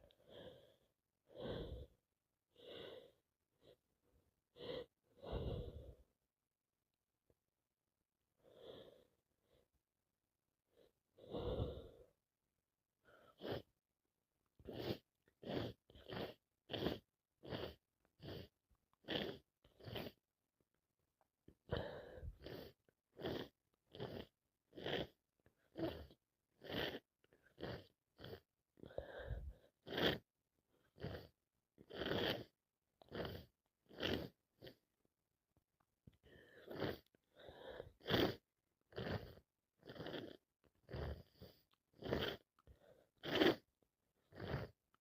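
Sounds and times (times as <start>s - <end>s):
person breathing quickly: 0.0s - 3.9s, 4.5s - 6.2s, 10.7s - 12.2s, 21.6s - 24.2s, 28.2s - 30.2s, 36.2s - 38.4s.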